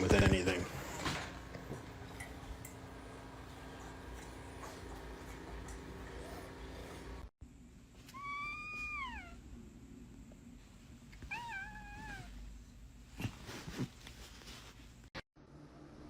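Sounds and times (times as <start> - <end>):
cat meowing: 8.1 - 9.4, 11.2 - 12.4.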